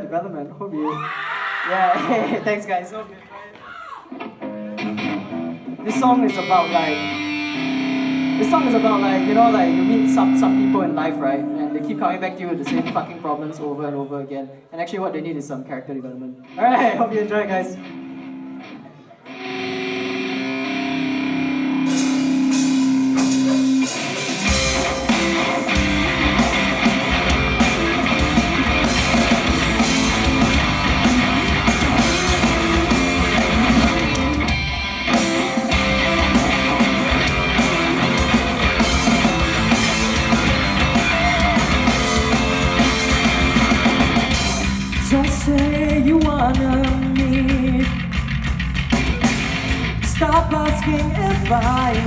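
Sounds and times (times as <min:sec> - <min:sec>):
rock band playing: 0:04.1 - 0:13.4, 0:17.7 - 0:52.0
guitar held notes: 0:04.1 - 0:13.5, 0:17.7 - 0:45.0
cymbals: 0:21.8 - 0:34.5.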